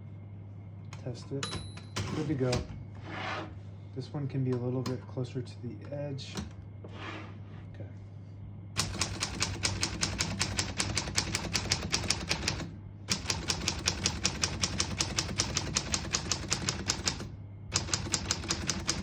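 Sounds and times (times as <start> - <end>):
typewriter typing: 8.8 - 19.0.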